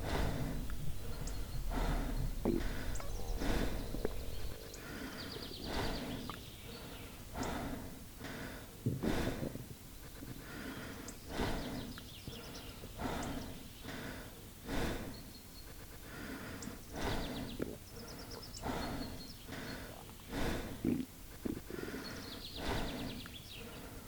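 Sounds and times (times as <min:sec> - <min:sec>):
stomach growling: 0:00.0 - 0:07.9, 0:19.9 - 0:21.9.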